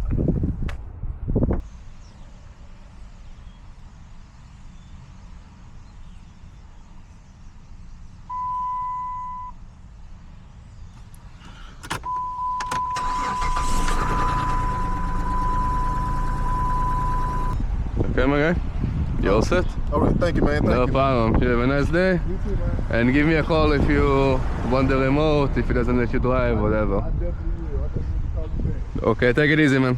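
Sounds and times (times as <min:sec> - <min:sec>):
car engine cranking and running: 0:11.8 - 0:17.6
ignition click: 0:11.8 - 0:17.6
electronic warning tone: 0:13.5 - 0:17.6.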